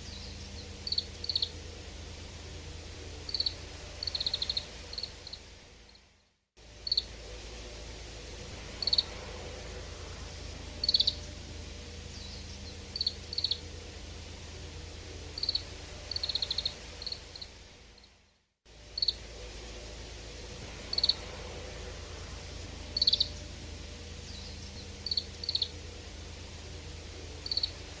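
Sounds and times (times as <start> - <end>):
finch chirps and trills: 0.0 - 1.6, 10.8 - 11.4, 12.0 - 13.6, 22.9 - 23.5, 24.2 - 25.8
low background hum: 0.0 - 28.0.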